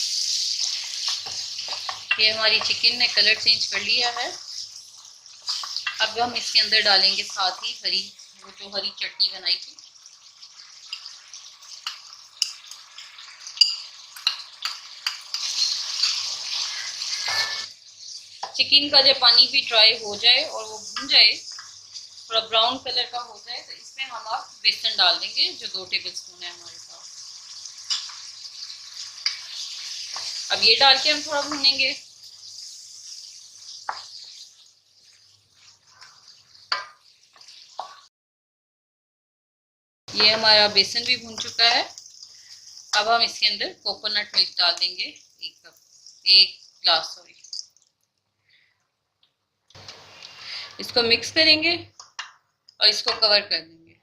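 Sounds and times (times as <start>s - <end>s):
chicken frying in oil: 0.0s - 38.1s, 40.1s - 51.4s
food sizzling in a pan: 0.0s - 38.1s, 40.1s - 53.5s
spatula scraping a pan: 0.6s - 3.5s, 4.5s - 6.0s, 13.5s - 18.2s, 27.2s - 37.9s
spoon clinking against pan: 11.8s - 12.8s, 13.5s - 16.2s, 17.2s - 17.7s, 27.8s - 28.3s.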